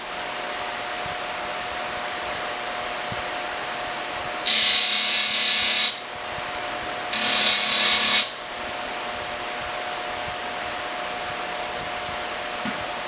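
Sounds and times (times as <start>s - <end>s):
steady shop hum: 3.4s - 13.0s
power tool hissing bursts: 4.5s - 6.1s, 7.2s - 8.4s.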